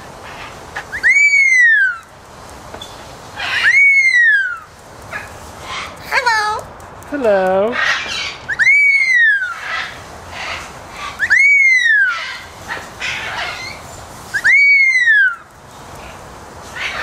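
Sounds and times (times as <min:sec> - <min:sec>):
bird chatter: 0:00.0 - 0:17.0
parrot whistling: 0:00.9 - 0:02.1, 0:03.4 - 0:04.7, 0:08.1 - 0:10.0, 0:11.0 - 0:12.4, 0:13.0 - 0:15.4.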